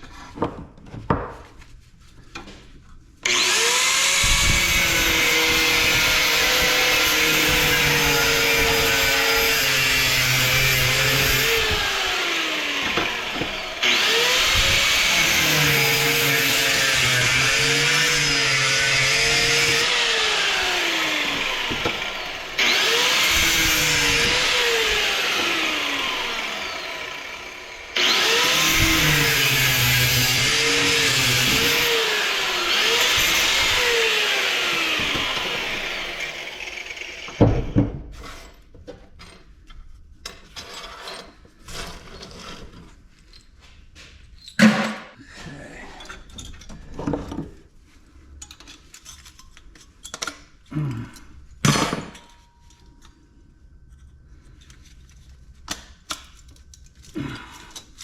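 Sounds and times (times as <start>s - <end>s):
electric saw cutting metal: 3.2s - 37.9s.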